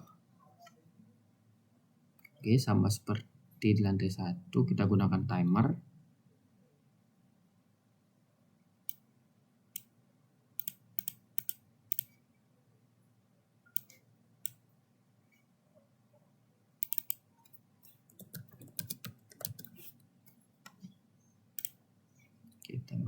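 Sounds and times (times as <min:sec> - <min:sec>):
mouse and keyboard clicks: 0:10.6 - 0:12.2, 0:13.7 - 0:14.6, 0:16.8 - 0:20.0, 0:21.6 - 0:21.8.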